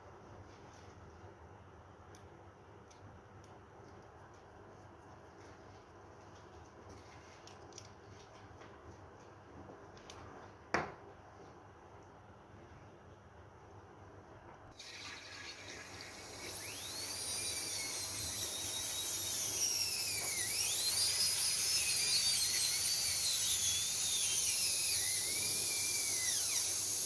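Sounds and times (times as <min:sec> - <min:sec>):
dental turbine handpiece whine: 0:14.8 - 0:27.0.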